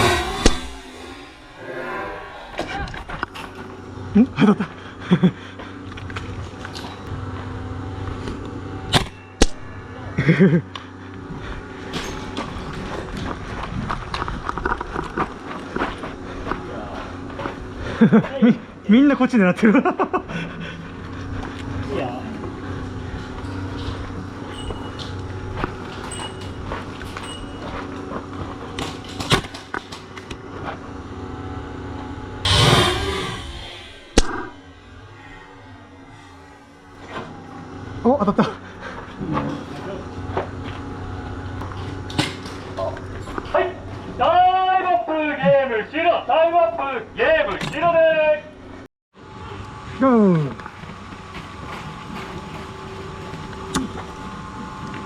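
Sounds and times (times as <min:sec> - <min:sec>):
loud rushing burst: 0:00.0 - 0:03.1, 0:32.5 - 0:36.4
steady background hum: 0:00.0 - 0:55.0.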